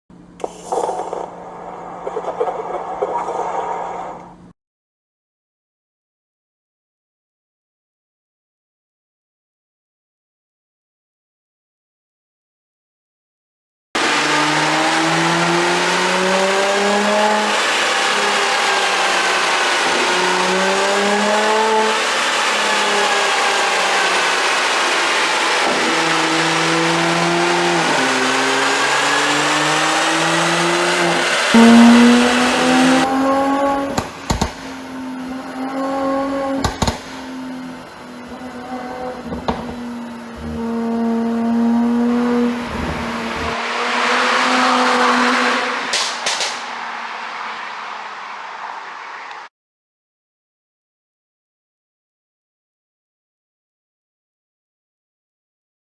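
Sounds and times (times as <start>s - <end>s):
car exhaust revving: 14.0s - 49.5s
exhaust pops and cracks: 33.9s - 34.8s, 36.6s - 37.2s, 45.9s - 46.6s.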